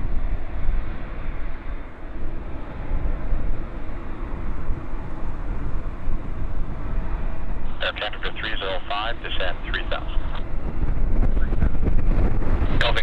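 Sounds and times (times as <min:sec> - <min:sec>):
gusty wind buffeting microphone: 0:00.0 - 0:13.0.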